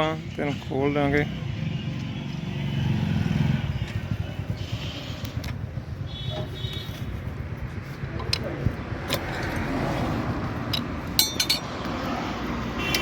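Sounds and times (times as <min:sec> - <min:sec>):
vehicle engine running: 0:01.5 - 0:13.0.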